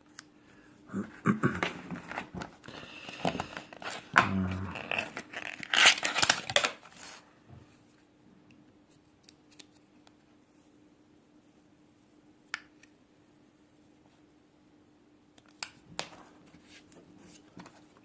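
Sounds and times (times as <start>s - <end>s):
paper sticker tearing and crumpling: 4.7s - 7.2s.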